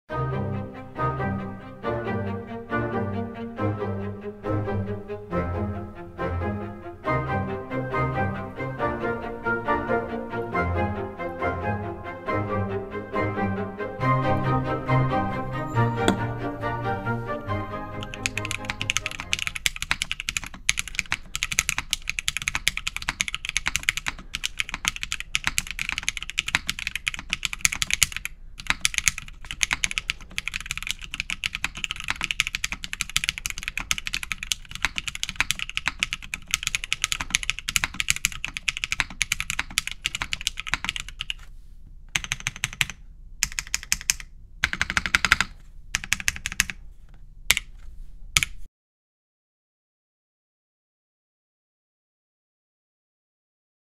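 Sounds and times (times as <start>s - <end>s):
mechanical keyboard typing: 18.0s - 41.4s, 42.1s - 46.8s, 47.5s - 47.8s, 48.4s - 48.7s.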